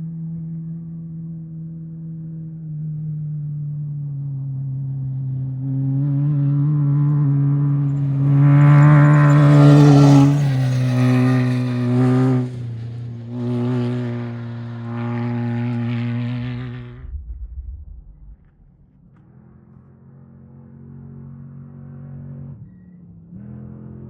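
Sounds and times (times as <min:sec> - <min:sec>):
off-road vehicle engine revving past: 0:05.1 - 0:24.0.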